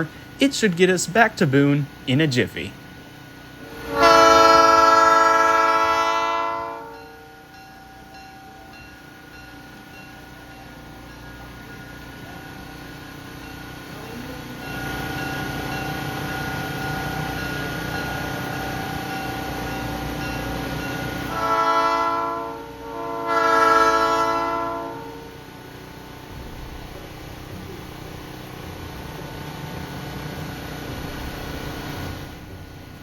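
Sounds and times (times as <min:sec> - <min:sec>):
diesel locomotive engine running: 0:00.0 - 0:33.0
locomotive air horn blasts: 0:03.7 - 0:07.2, 0:21.3 - 0:25.5.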